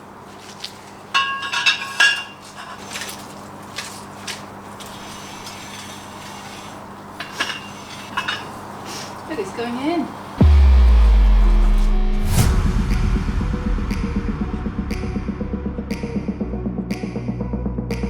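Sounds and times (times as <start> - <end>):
metal clinks and knocks: 1.2 - 3.2.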